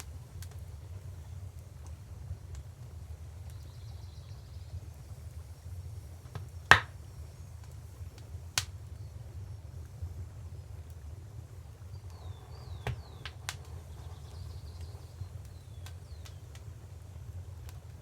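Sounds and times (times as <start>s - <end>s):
wood fire crackling: 0.0s - 18.0s
loud sharp pops: 6.3s - 7.0s, 12.7s - 13.8s.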